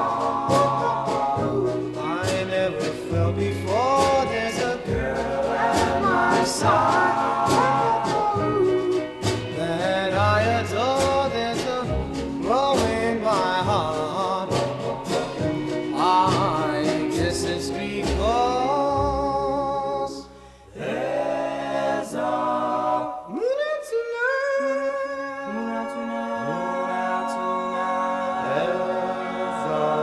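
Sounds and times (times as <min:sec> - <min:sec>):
steady drum beat: 0:00.0 - 0:18.7
doo-wop vocal group singing: 0:00.0 - 0:30.0.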